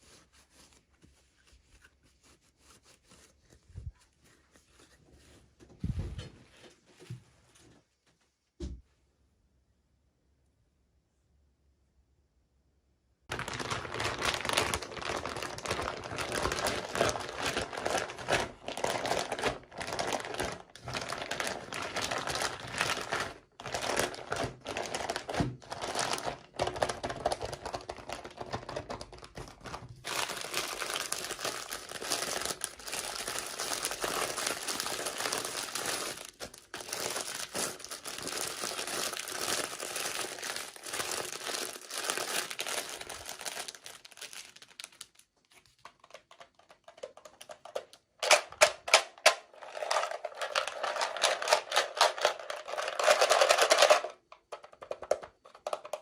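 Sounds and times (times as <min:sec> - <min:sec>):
packaging crinkling and rustling: 0:13.3 - 0:56.0.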